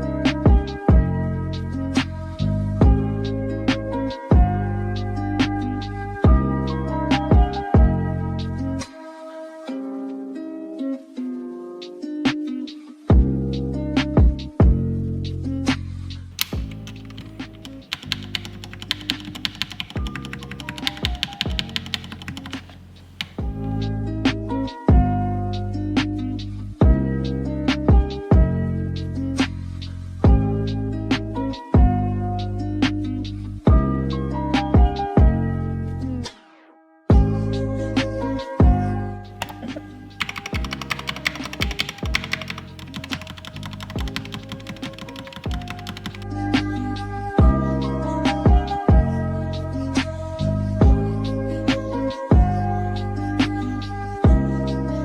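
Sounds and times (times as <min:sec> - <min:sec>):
typing on mechanical keyboard: 0:16.4 - 0:23.8, 0:39.4 - 0:46.3.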